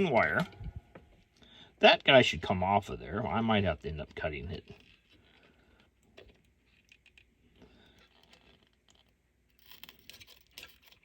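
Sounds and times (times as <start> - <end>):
faint clicks and scratches: 3.1 - 11.0.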